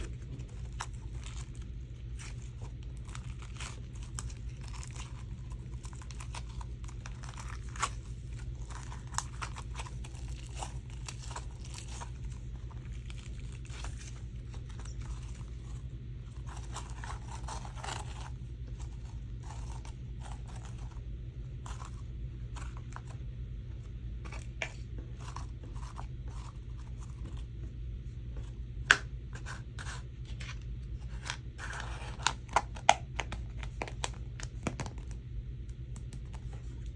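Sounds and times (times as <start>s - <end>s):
slime crackling and popping: 0.0s - 15.7s.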